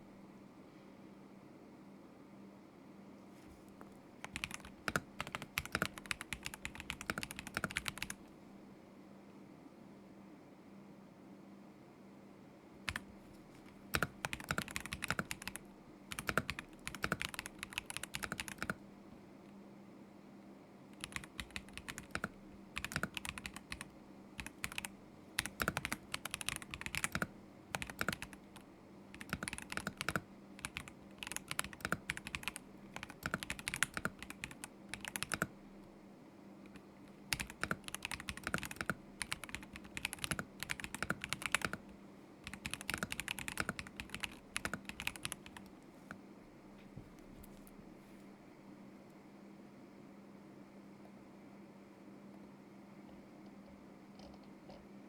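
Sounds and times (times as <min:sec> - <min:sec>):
mechanical keyboard typing: 0:04.2 - 0:08.2, 0:12.9 - 0:13.1, 0:13.9 - 0:18.8, 0:21.0 - 0:35.5, 0:36.7 - 0:45.7.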